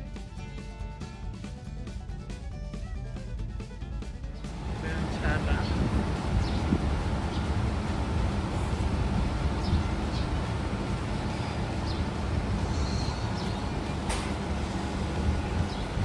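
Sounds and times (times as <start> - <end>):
road and tyre rumble in car: 4.5 - 16.0.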